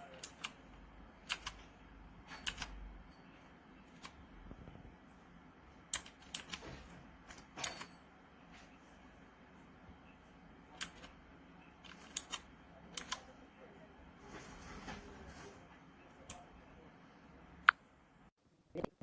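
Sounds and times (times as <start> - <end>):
mechanical keyboard key clacks: 1.3 - 1.6, 2.3 - 2.8, 5.9 - 6.6, 10.8 - 11.1, 11.8 - 13.2.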